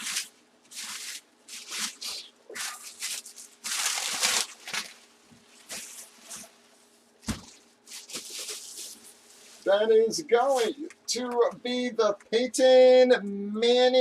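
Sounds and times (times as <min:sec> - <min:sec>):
packaging rustling and crinkling: 0:00.0 - 0:09.7.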